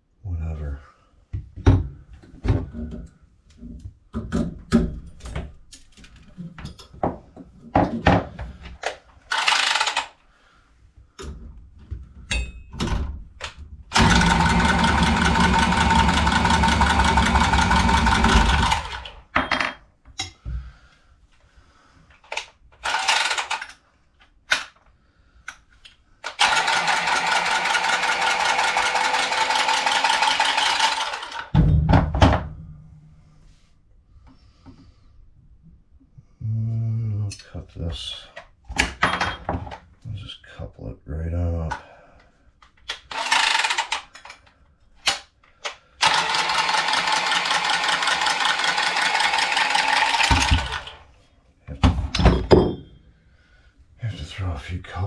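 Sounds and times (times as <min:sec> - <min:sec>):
power tool motor running: 0:13.9 - 0:19.1, 0:26.3 - 0:31.5, 0:43.1 - 0:43.9, 0:46.0 - 0:51.0.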